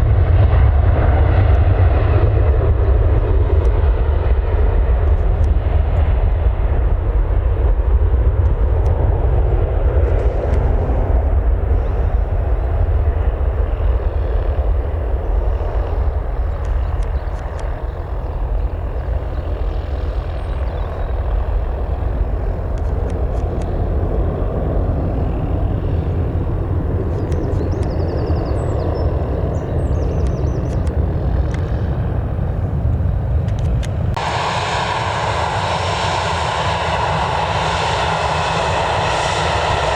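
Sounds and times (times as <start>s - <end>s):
airliner engine noise: 0.0s - 39.9s
faint bird chirps: 27.1s - 30.9s.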